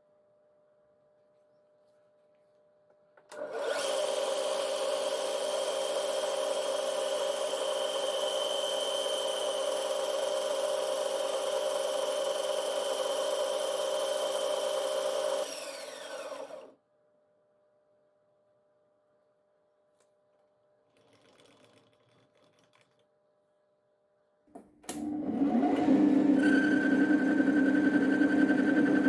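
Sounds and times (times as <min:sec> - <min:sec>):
power tool motor whining: 0:03.4 - 0:10.3, 0:12.3 - 0:16.7.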